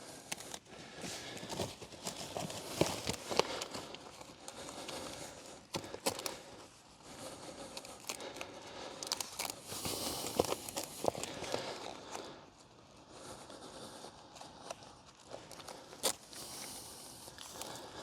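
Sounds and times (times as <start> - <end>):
bag material rustling and crinkling: 0.4 - 6.7, 9.0 - 12.4.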